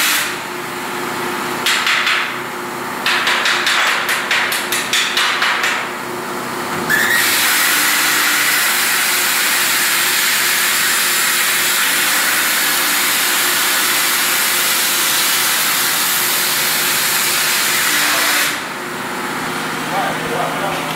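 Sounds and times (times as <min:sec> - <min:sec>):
cutting machine hissing: 0:06.9 - 0:18.8.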